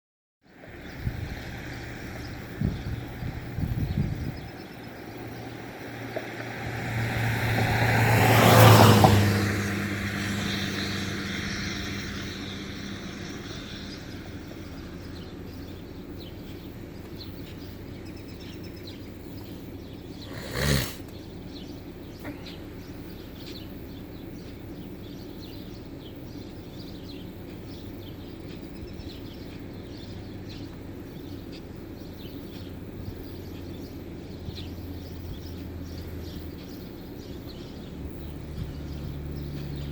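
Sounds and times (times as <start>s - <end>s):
vehicle passing close by: 0.6s - 16.7s, 19.7s - 21.7s, 33.8s - 39.9s.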